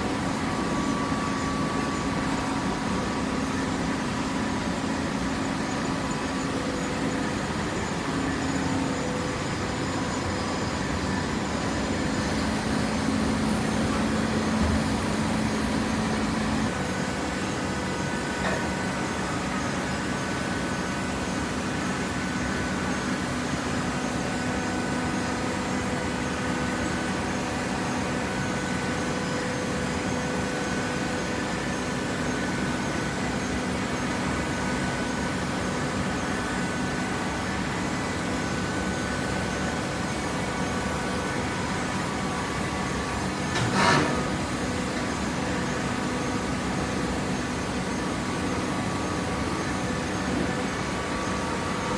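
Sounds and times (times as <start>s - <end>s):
hydraulic baler motor hum: 10.8s - 19.9s, 42.6s - 47.1s.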